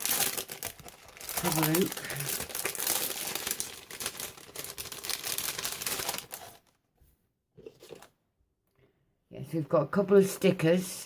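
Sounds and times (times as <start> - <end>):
plastic packaging crinkling: 0.0 - 6.8.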